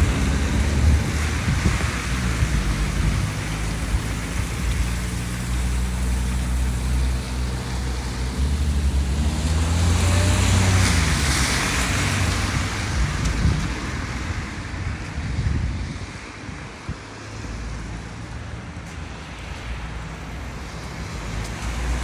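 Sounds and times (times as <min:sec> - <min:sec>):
vehicle engine running: 0:00.0 - 0:15.6
rushing hiss of traffic or wind: 0:00.0 - 0:22.0.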